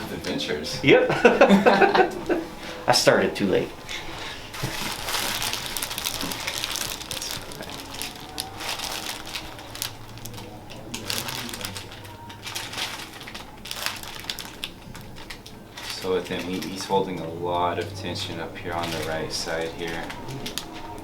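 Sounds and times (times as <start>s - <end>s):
rustling and crinkling on table: 3.8s - 17.2s, 18.7s - 21.0s.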